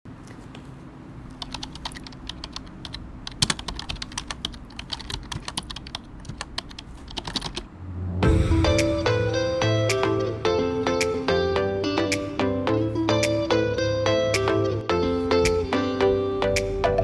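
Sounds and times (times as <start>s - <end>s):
mechanical keyboard typing: 1.3s - 7.7s
music: 8.2s - 17.0s.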